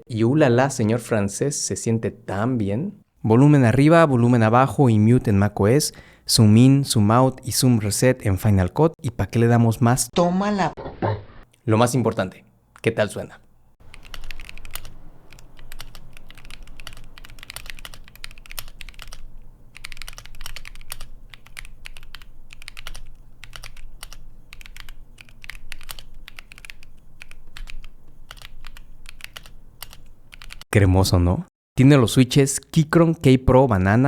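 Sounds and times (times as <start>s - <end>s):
mechanical keyboard typing: 13.8s - 30.6s.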